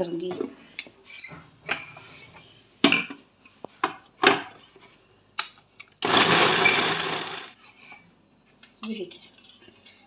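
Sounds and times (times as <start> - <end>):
electric mixer grinder grinding: 6.0 - 7.6.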